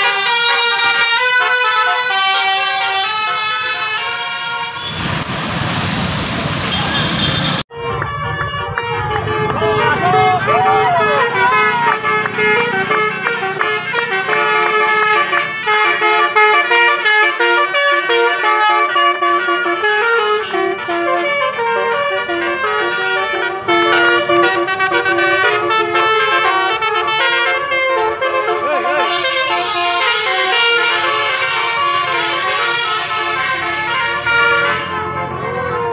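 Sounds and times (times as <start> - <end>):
multi-tone air horn melody: 0.0 - 5.1, 6.7 - 35.9.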